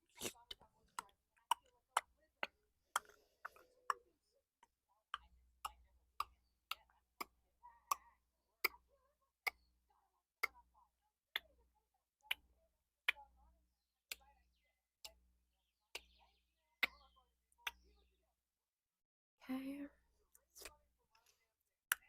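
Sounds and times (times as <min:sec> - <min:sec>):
wet mouth and tongue clicks: 0:00.1 - 0:04.0.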